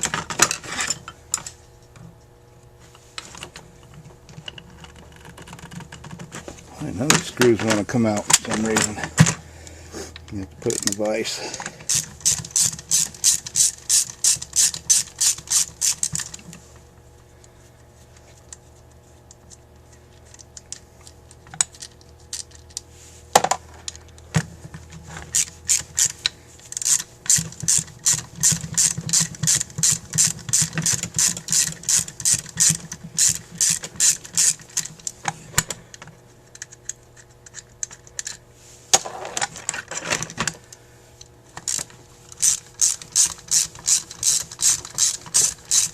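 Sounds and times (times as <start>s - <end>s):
ratcheting hand tool clicking: 10.2s - 16.5s, 25.3s - 38.4s, 41.6s - 45.9s.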